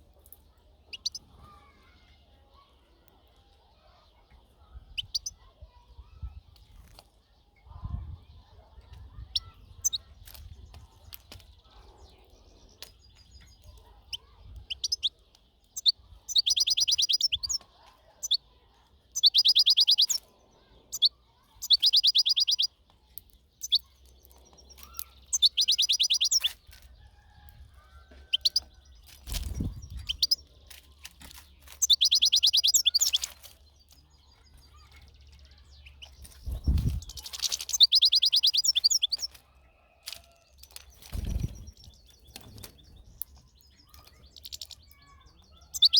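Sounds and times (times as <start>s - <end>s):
goldfinch twittering trills: 0.9s - 1.2s, 13.2s - 17.6s, 19.2s - 20.3s, 20.9s - 22.7s, 23.6s - 26.6s, 28.3s - 30.8s, 31.8s - 39.3s, 40.6s - 45.9s.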